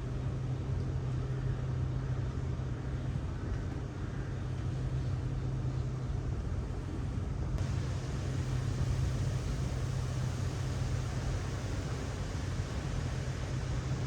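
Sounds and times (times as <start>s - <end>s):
low mechanical hum: 0.0s - 14.0s
constant hiss: 7.5s - 14.0s.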